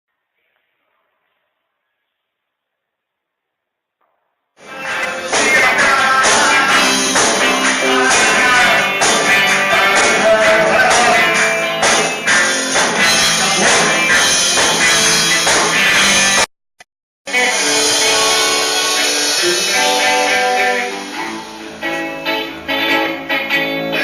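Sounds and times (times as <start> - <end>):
loud music with steady beat: 4.6 - 16.5, 17.4 - 22.9.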